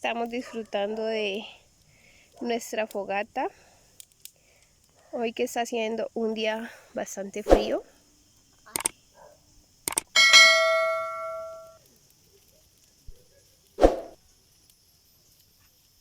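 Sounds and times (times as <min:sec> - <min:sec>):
campfire crackling: 0:00.0 - 0:16.0
steady high hiss: 0:00.0 - 0:16.0
metal struck ringing: 0:10.2 - 0:11.8.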